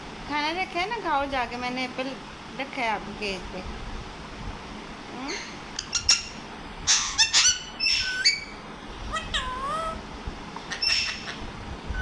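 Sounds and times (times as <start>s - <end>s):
parrot squawking: 5.3s - 10.0s, 10.6s - 11.5s.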